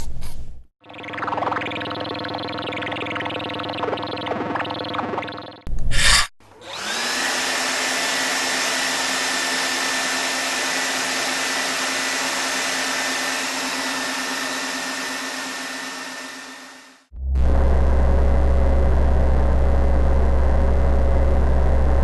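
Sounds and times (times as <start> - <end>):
low hum: 15.8 - 22.0.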